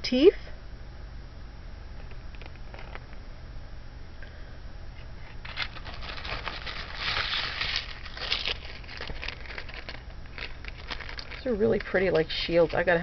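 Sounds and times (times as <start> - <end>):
packaging crinkling and rustling: 2.0 - 3.2, 5.0 - 13.0.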